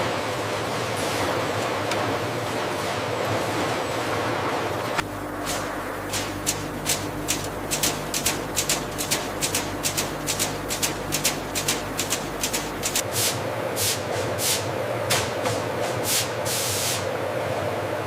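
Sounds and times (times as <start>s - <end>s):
machinery humming: 0.0s - 18.0s
rapid clicking and rattling: 5.4s - 13.0s.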